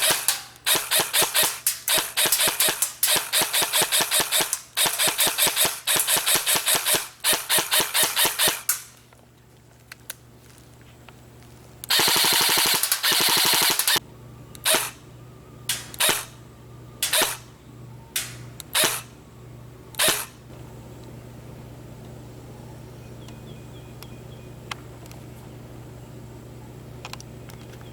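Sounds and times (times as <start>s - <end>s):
airsoft gun firing: 0.0s - 9.0s, 11.9s - 14.0s, 14.6s - 15.0s, 15.7s - 16.3s, 17.0s - 17.5s, 18.2s - 19.1s, 20.0s - 20.3s.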